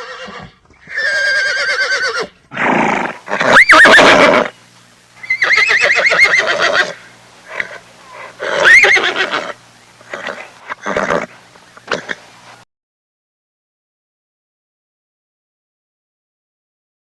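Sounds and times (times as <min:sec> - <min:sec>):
horse whinnying: 0:00.0 - 0:04.5, 0:05.2 - 0:11.3.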